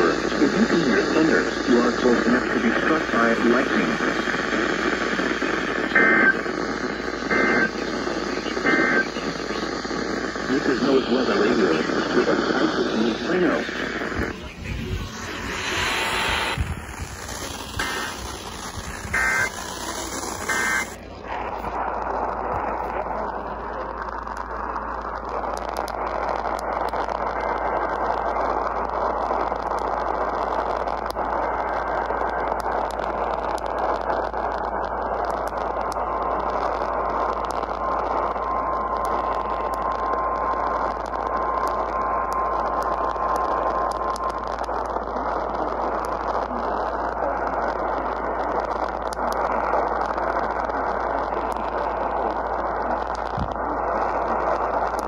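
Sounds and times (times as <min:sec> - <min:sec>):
radio static hiss: 0:00.0 - 0:55.0
static crackles: 0:00.0 - 0:55.0
low hum: 0:00.3 - 0:55.0.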